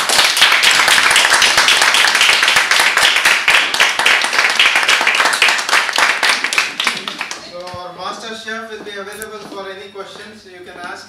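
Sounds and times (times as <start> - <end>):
audience applauding: 0.0 - 7.7.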